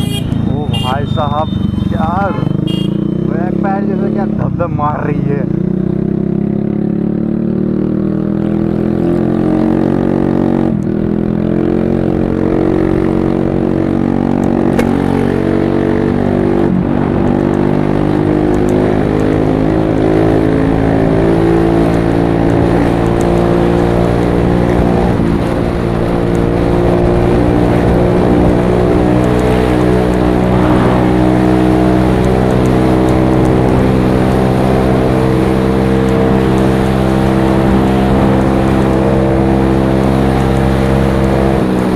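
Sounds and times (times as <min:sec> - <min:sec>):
scooter engine thumping exhaust: 0:01.5 - 0:03.6, 0:14.3 - 0:15.4.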